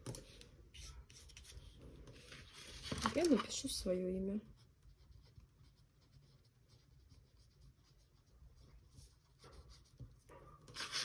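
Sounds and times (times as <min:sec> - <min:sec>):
pencil scratching on paper: 0:04.5 - 0:11.0.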